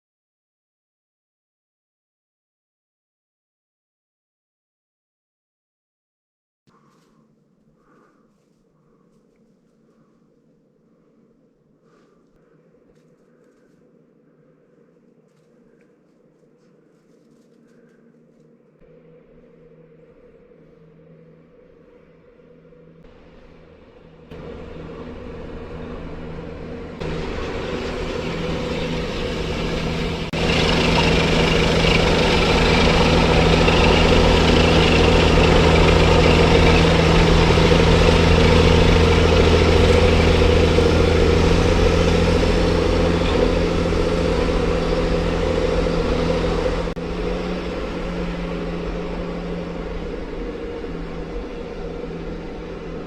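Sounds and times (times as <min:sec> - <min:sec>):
engine humming: 0:20.1 - 0:53.0.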